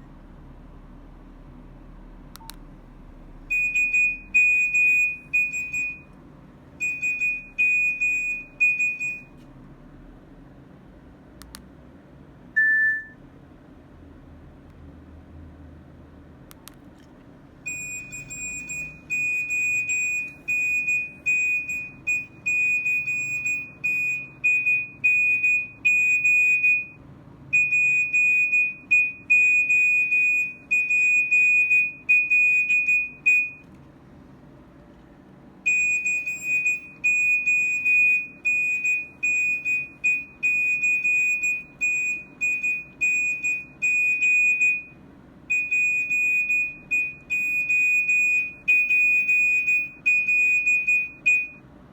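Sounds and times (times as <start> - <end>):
beeping phone ringtone: 3.5 - 6.1, 6.8 - 9.3, 12.6 - 13.2, 17.7 - 27.0, 27.6 - 33.6, 35.7 - 51.6.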